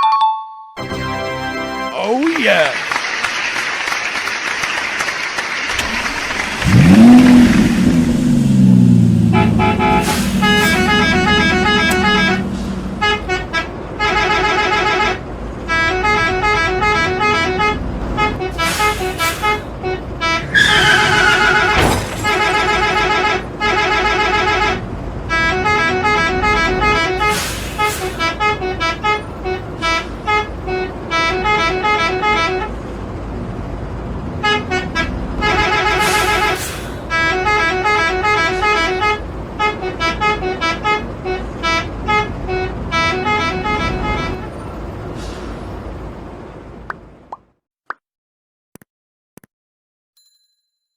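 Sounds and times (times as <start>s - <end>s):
bus horn tooting melodies: 5.8s - 7.9s, 9.0s - 33.2s, 34.2s - 45.4s.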